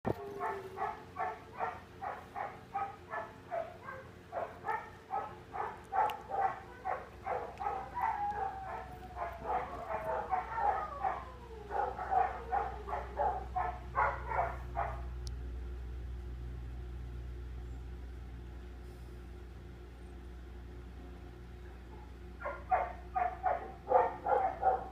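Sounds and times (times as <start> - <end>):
low steady hum: 0.1 - 24.9
dog barking: 0.4 - 15.1, 21.9 - 24.9.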